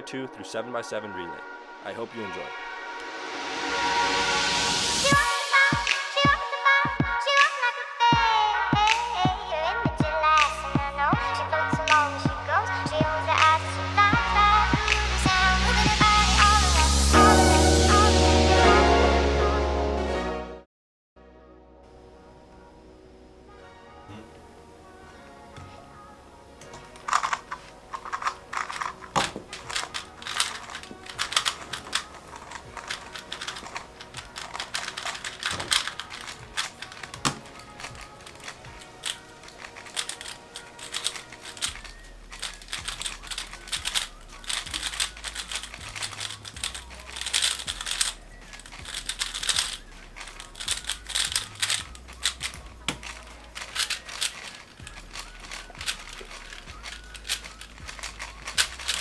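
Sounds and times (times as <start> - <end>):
background music: 0.0 - 20.6, 21.2 - 59.0
plastic speed cubes clicking: 24.3 - 59.0.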